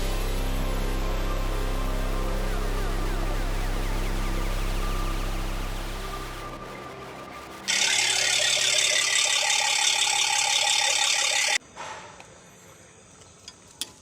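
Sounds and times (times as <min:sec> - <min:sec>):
small power tool whining: 0:07.7 - 0:11.6.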